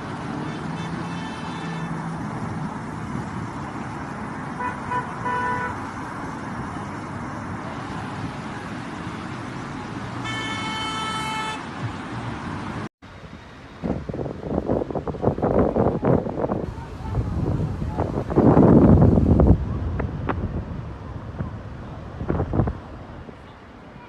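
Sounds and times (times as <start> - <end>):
rushing street noise: 0.0 - 24.0
car horns: 0.3 - 2.1, 4.5 - 5.9, 10.2 - 11.9.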